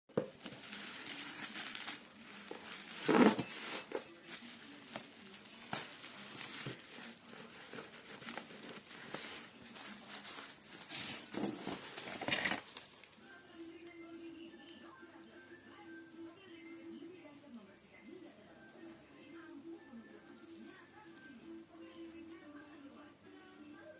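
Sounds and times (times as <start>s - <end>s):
crinkling and rustling: 0.1s - 13.7s.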